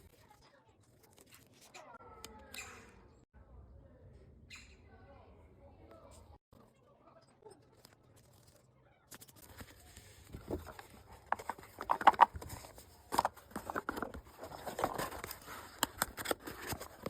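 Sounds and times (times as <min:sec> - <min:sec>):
packaging rustling and crinkling: 0:09.4 - 0:17.0.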